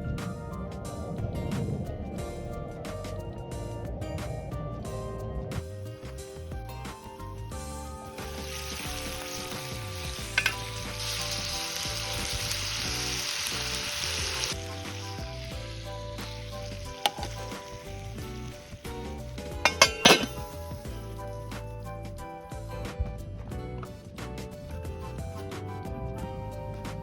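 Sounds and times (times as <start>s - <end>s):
background music: 0.0s - 27.0s
food sizzling in a hot pan: 7.6s - 21.4s
metal clinks of utensils: 10.3s - 10.6s, 19.7s - 20.6s.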